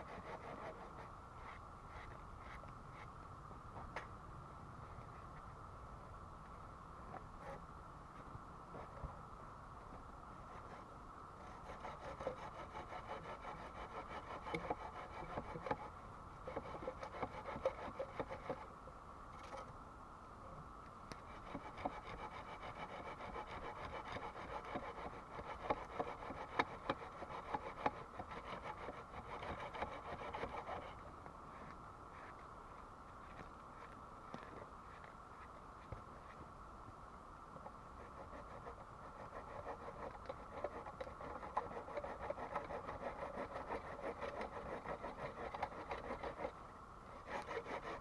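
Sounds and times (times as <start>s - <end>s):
hand tool rasping wood: 0.0s - 1.0s, 11.4s - 15.9s, 16.5s - 18.7s, 21.3s - 31.0s, 38.0s - 46.5s, 47.2s - 48.0s.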